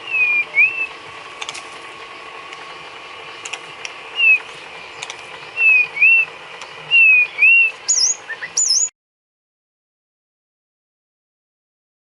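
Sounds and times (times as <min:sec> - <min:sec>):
bird singing whistled notes: 0:00.0 - 0:01.0, 0:04.2 - 0:08.9
light clicks: 0:05.0 - 0:05.3.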